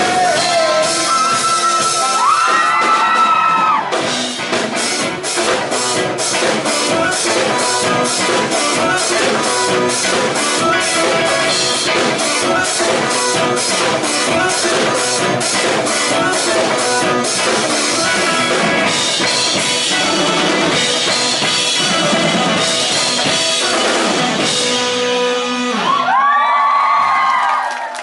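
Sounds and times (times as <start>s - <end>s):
audience cheering and screaming: 0.0s - 4.3s, 25.6s - 28.0s
live rock band playing: 0.0s - 26.4s.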